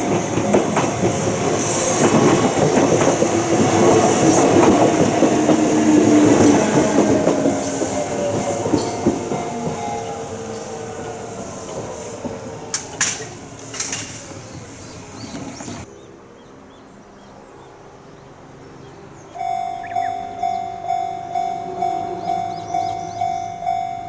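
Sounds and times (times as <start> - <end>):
train passing: 0.0 - 24.0
level crossing warning bell: 5.2 - 11.8, 19.3 - 24.0
wheel clacks: 11.0 - 15.9.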